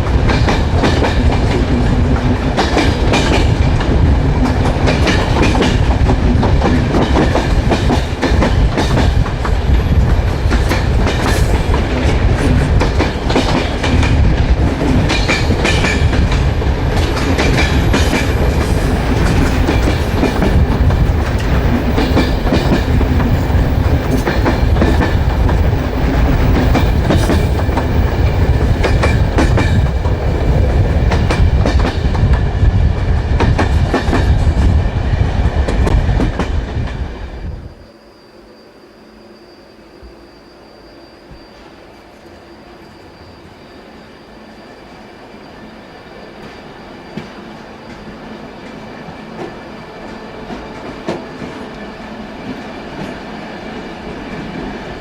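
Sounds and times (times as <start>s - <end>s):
train wheels rolling on rails: 0.0s - 55.0s.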